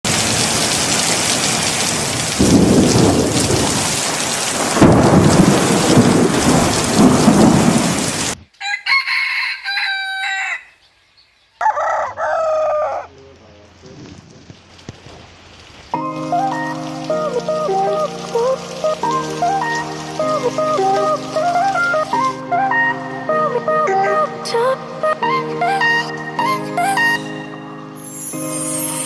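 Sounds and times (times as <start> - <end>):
heavy rain: 0.0 - 8.4, 13.1 - 29.0
thunder rolling: 0.1 - 8.4
rooster crowing: 8.6 - 10.8, 11.6 - 13.1.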